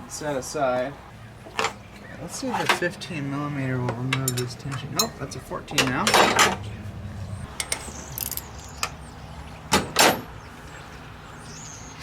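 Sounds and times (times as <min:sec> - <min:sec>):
metal hand tools clinking: 0:04.1 - 0:06.6, 0:07.6 - 0:08.5.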